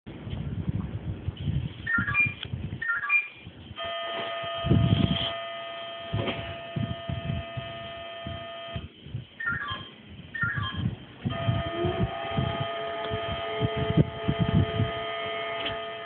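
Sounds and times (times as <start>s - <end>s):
low rumbling noise: 0.1s - 16.0s
pager stepped beeps: 1.9s - 8.8s, 9.4s - 10.9s
buzzing alert tone: 3.2s - 16.0s.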